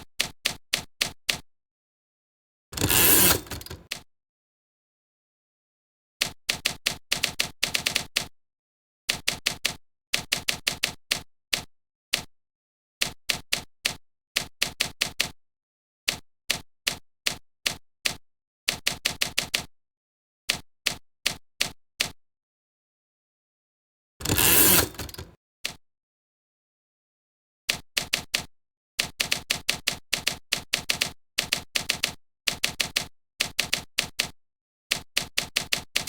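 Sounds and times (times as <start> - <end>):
sharp mechanical clicks: 2.8 - 4.0, 24.2 - 25.8.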